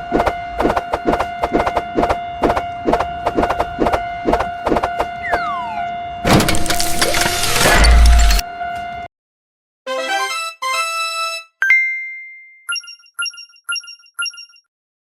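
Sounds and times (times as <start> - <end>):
falling whistle glide: 0.1 - 5.9.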